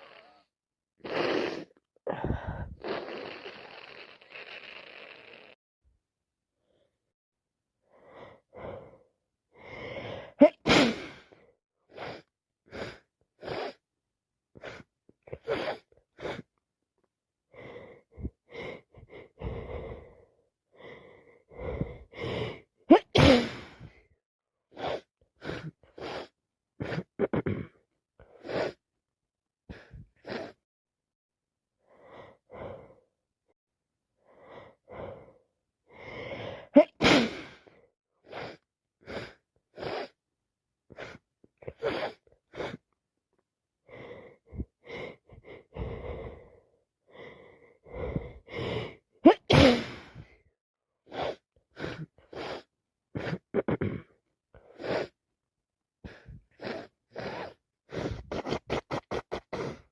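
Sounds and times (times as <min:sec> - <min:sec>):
woman sneezing: 0:10.4 - 0:11.2, 0:22.9 - 0:23.7, 0:36.8 - 0:37.5, 0:49.2 - 0:50.2.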